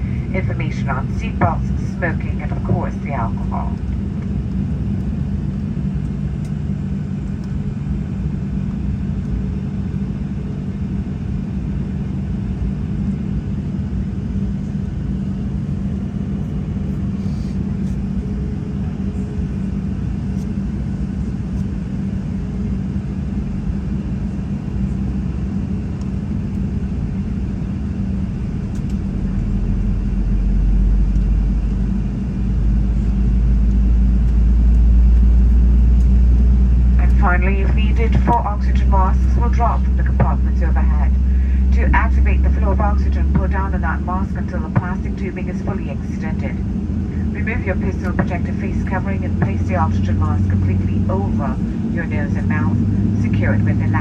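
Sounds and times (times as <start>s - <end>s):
airplane cabin hum: 0.0s - 54.0s
deep engine rumble: 0.0s - 54.0s.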